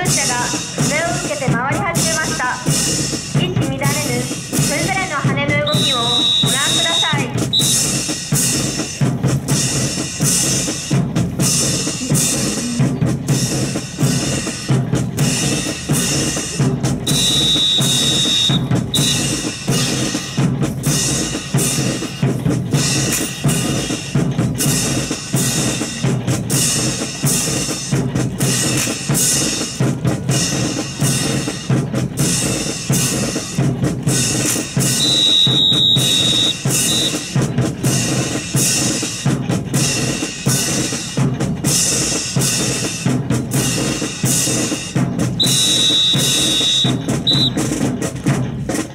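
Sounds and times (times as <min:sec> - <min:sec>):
snare and bass drum marching: 0:00.0 - 0:48.9
high steady tone: 0:35.0 - 0:37.2, 0:45.4 - 0:47.6.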